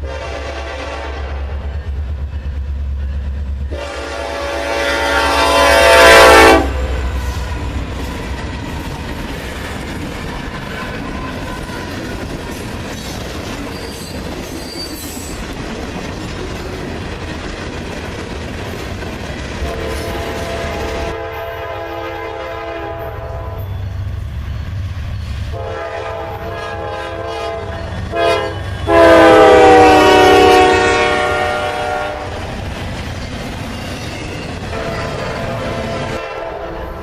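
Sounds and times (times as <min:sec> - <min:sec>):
locomotive air horn chord: 0:00.0 - 0:01.5, 0:03.7 - 0:07.7, 0:19.6 - 0:23.7, 0:25.5 - 0:32.3, 0:34.7 - 0:37.0
train wheels on rail: 0:00.0 - 0:37.0.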